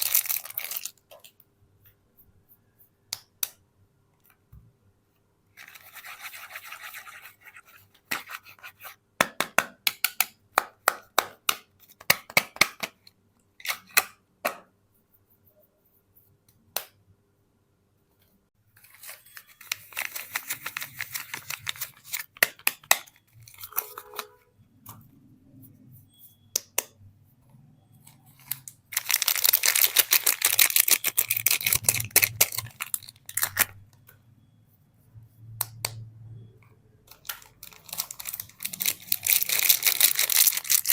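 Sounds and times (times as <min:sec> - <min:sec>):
soap wrapper crinkling and tearing: 0:00.0 - 0:01.2, 0:28.4 - 0:33.8, 0:37.4 - 0:40.9.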